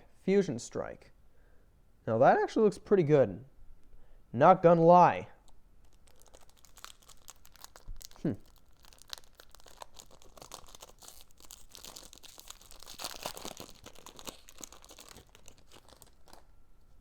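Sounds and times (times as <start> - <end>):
foil wrapper crinkling and tearing: 5.4 - 16.5.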